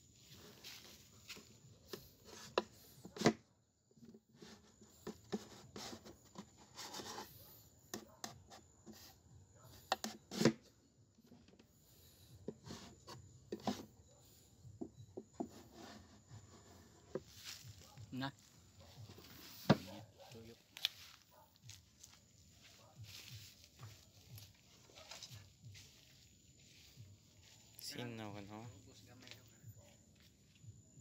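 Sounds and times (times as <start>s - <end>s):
wood rubbing and scraping: 0.1s - 27.6s
wooden knocks and taps: 14.8s - 15.6s.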